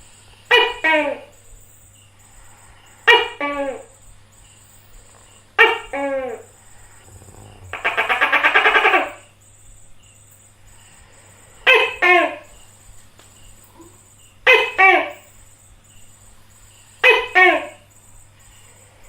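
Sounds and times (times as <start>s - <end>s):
gecko calling: 0.5s - 18.8s
gecko rattling chatter: 0.5s - 19.0s.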